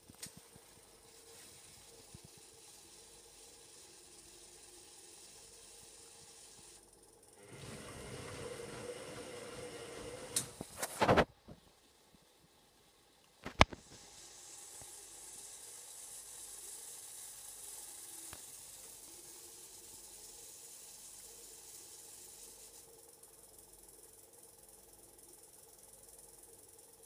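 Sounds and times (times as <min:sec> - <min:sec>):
water inlet hiss: 0:07.4 - 0:11.2, 0:13.7 - 0:22.9.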